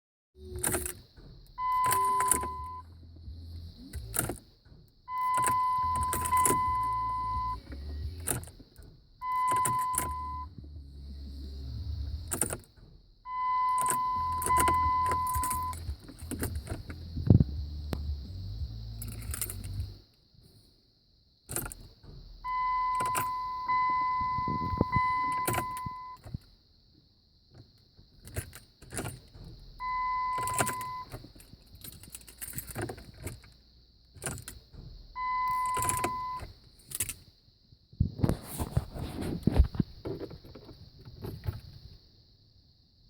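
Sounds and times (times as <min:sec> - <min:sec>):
keys jangling and clicking: 0:00.6 - 0:01.0, 0:03.9 - 0:07.0, 0:08.2 - 0:10.3, 0:12.3 - 0:12.7, 0:13.7 - 0:17.0, 0:19.0 - 0:19.9, 0:21.5 - 0:21.9, 0:22.9 - 0:23.5, 0:24.4 - 0:26.5, 0:28.2 - 0:33.6, 0:34.2 - 0:34.7, 0:35.5 - 0:37.2
electronic warning tone: 0:01.6 - 0:02.9, 0:05.1 - 0:08.2, 0:09.2 - 0:10.6, 0:13.3 - 0:15.9, 0:22.4 - 0:26.2, 0:35.2 - 0:36.4.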